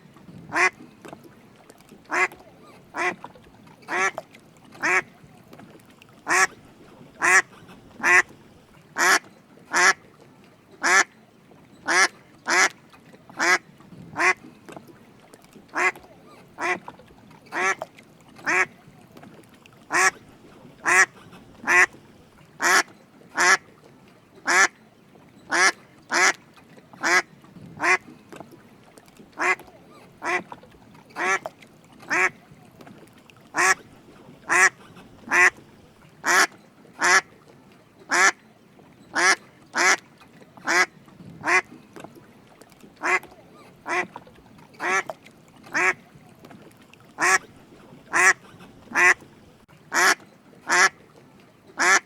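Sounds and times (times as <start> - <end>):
duck quacking: 0.5 - 0.8, 2.1 - 3.2, 3.9 - 4.2, 4.8 - 5.1, 6.3 - 6.5, 7.2 - 8.3, 9.0 - 10.0, 10.8 - 11.1, 11.9 - 12.7, 14.2 - 14.4, 15.7 - 16.0, 16.6 - 16.8, 17.5 - 17.8, 18.5 - 18.7, 19.9 - 20.2, 20.8 - 22.0, 22.6 - 23.6, 24.5 - 24.7, 25.5 - 26.4, 27.8 - 28.0, 29.4 - 29.6, 30.2 - 30.4, 31.2 - 31.4, 32.1 - 32.4, 33.6 - 33.8, 34.4 - 35.6, 36.2 - 37.3, 38.1 - 38.4, 39.2 - 40.0, 40.6 - 41.7, 43.0 - 43.3, 43.9 - 44.1, 44.8 - 45.1, 45.7 - 46.0, 47.2 - 47.4, 48.1 - 49.3, 49.9 - 51.0, 51.8 - 52.0.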